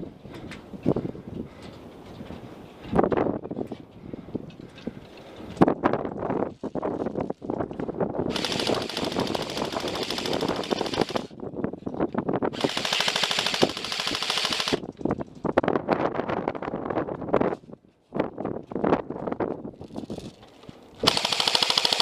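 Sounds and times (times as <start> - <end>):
airsoft gun firing full auto: 8.3 - 11.3, 12.6 - 14.8, 21.0 - 22.0.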